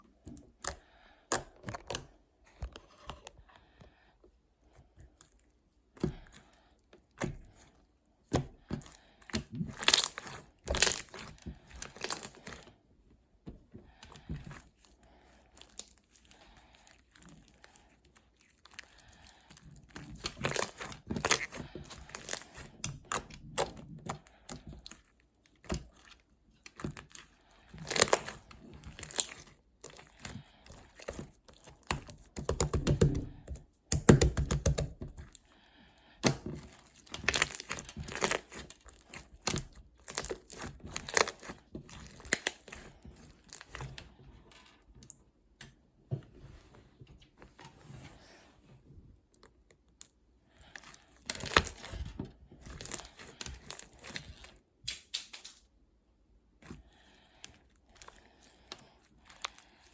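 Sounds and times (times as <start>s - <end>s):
crinkling and tearing handling noises: 8.3s - 12.8s, 13.6s - 45.2s, 49.2s - 55.7s, 56.6s - 59.9s.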